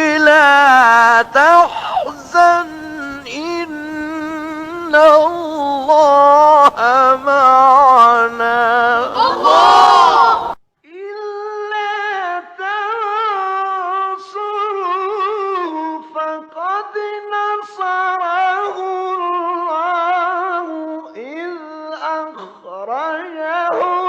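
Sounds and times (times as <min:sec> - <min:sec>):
person chanting solo: 0:00.0 - 0:10.6
short breaths: 0:01.6 - 0:02.2.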